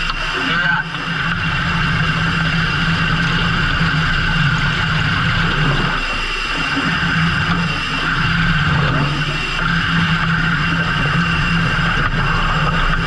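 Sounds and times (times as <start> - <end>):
boat engine humming: 0.0 - 13.0.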